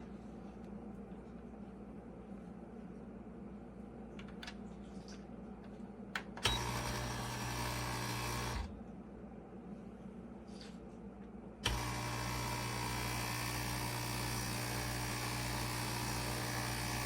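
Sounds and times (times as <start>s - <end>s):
espresso machine pump buzzing: 6.5s - 8.7s, 11.6s - 17.0s.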